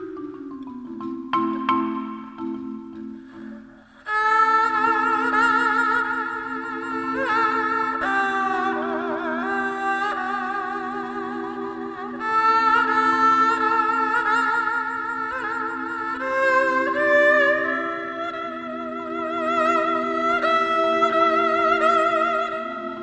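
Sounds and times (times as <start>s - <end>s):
low marimba notes: 0.0s - 3.9s
bowed fiddle melody: 4.1s - 23.0s.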